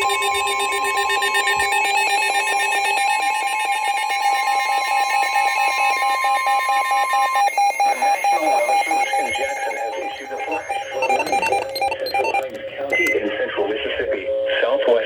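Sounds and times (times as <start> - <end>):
electronic alert tones: 4.4 - 13.3.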